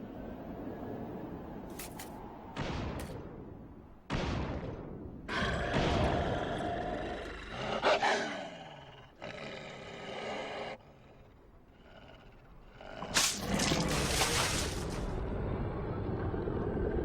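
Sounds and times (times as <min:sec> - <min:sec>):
wolf roaring and snarling: 0:11.8 - 0:15.2.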